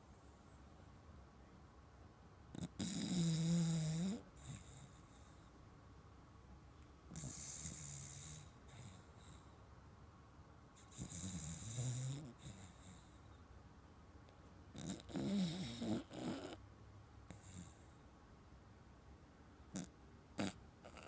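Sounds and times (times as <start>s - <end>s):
dog snoring: 2.5s - 5.5s, 7.1s - 9.5s, 10.8s - 13.2s, 14.7s - 16.6s, 17.3s - 18.0s, 19.7s - 21.0s.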